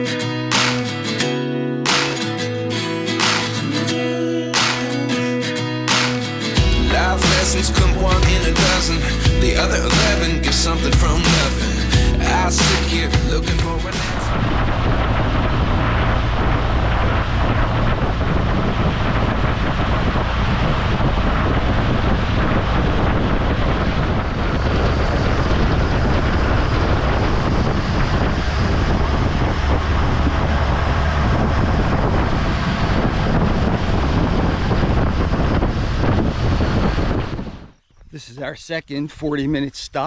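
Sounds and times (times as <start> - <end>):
boat engine: 1.9 - 36.8
water noise: 1.9 - 37.8
wind over microphone: 13.6 - 38.2.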